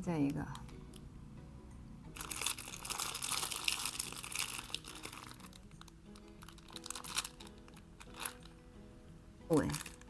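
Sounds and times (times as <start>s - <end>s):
soft background music: 0.0s - 10.0s
food packaging crinkling: 2.2s - 8.6s, 9.5s - 10.0s.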